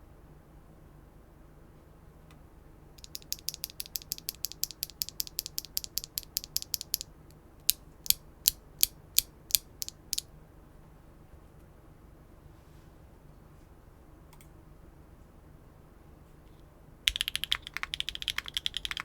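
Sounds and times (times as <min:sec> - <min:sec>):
mechanical keyboard keys clacking: 0:03.0 - 0:07.1, 0:07.7 - 0:10.2, 0:17.1 - 0:19.0.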